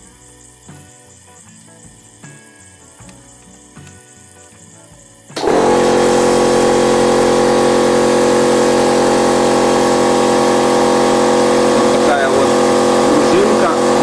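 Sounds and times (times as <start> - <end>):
air compressor motor running: 5.4 - 14.0.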